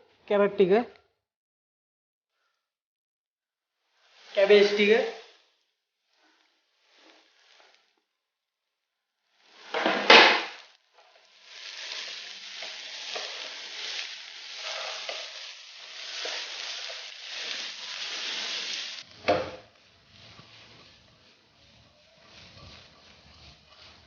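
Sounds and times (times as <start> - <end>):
vegetables sizzling in oil: 3.9 - 8.0, 9.3 - 24.0
stirring scrape: 11.3 - 24.0.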